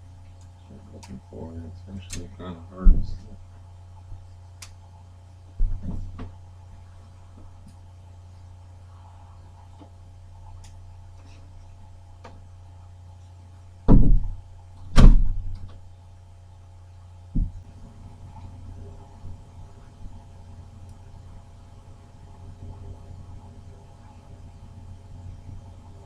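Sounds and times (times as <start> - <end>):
steady low hum: 0.0 - 26.0
loud thumps: 13.9 - 15.7, 17.3 - 17.7.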